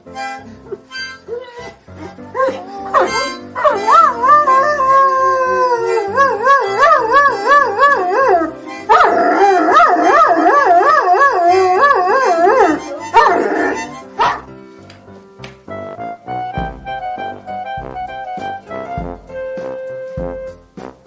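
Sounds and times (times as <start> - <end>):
background music: 0.0 - 21.0
dog howling: 1.3 - 14.4.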